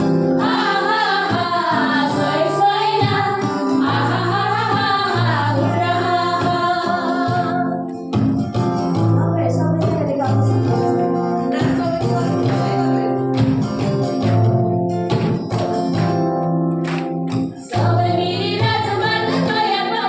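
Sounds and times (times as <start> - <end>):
instrumental accompaniment: 0.0 - 20.0
women singing worship song: 0.4 - 7.8, 17.6 - 20.0.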